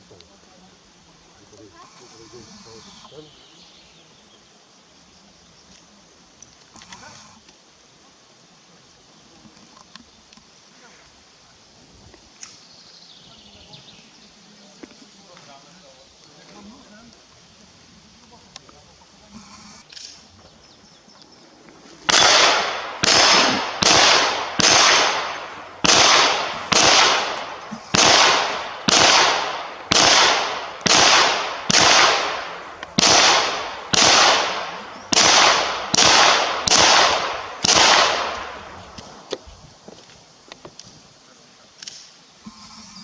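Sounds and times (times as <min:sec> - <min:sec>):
gunshots with echo: 0:22.1 - 0:38.7.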